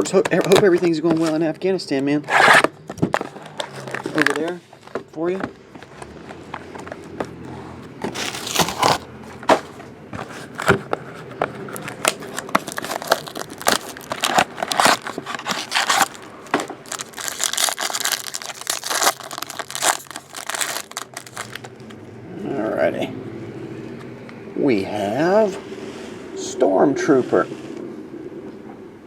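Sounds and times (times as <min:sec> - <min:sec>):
packaging torn and crinkled: 0:03.8 - 0:04.5, 0:08.1 - 0:09.1, 0:11.7 - 0:22.0.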